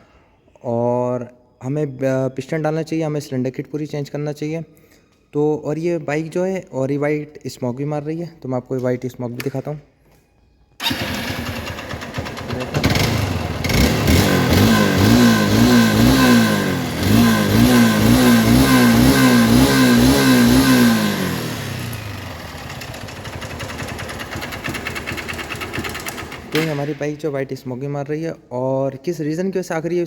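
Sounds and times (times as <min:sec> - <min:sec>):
motorcycle engine revving: 0:10.8 - 0:26.9.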